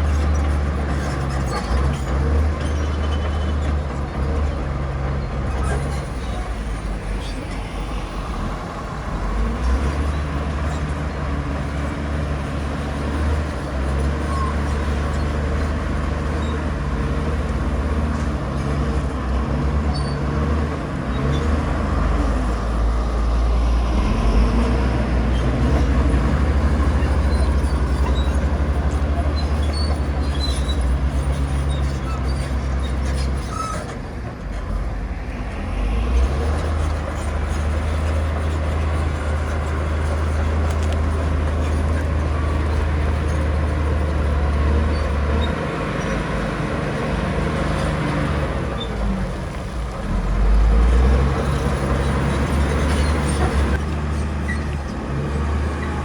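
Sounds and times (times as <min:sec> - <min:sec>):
heavy diesel engine under load: 0:00.0 - 0:56.0.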